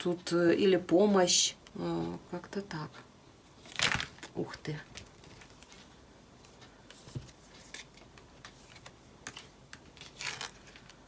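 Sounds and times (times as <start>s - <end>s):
cards rustling: 3.6s - 11.0s.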